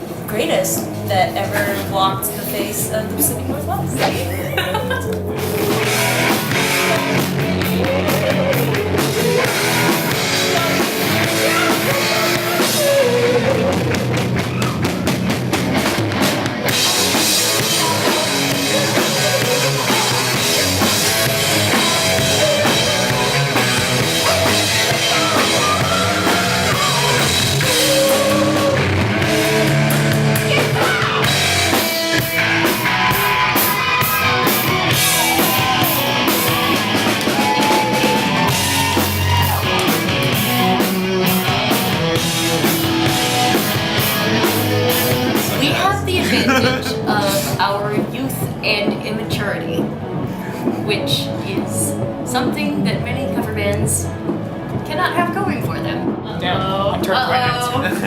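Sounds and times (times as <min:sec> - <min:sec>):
rock band playing: 0:00.0 - 0:58.0
person singing: 0:06.6 - 0:14.2, 0:17.6 - 0:29.9, 0:45.6 - 0:47.6.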